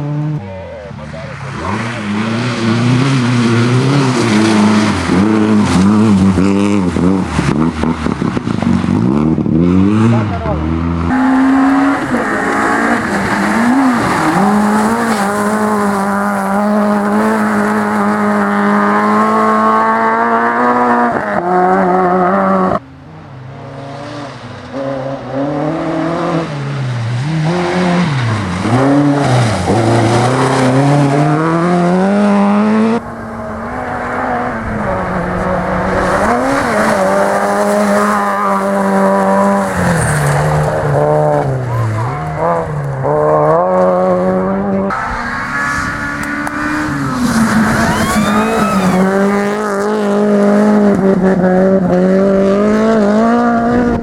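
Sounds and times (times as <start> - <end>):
rally car engines revving: 0.0 - 54.0
tyre squeal: 46.8 - 49.6.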